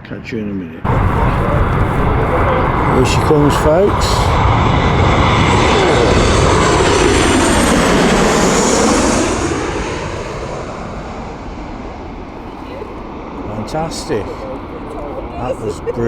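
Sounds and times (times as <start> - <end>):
airliner passing low overhead: 0.8 - 16.0.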